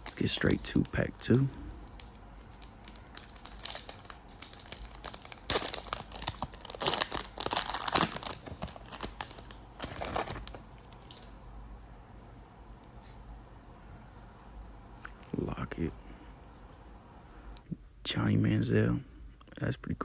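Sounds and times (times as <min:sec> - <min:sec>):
plastic wrapper tearing and crinkling: 0:00.0 - 0:11.3.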